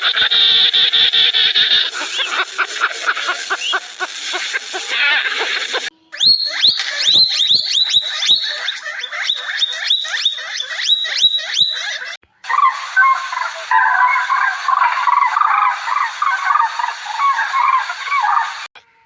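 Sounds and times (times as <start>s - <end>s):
dense chattering animal calls: 0.0s - 18.8s
high upward-sweeping chirps: 0.3s - 18.7s.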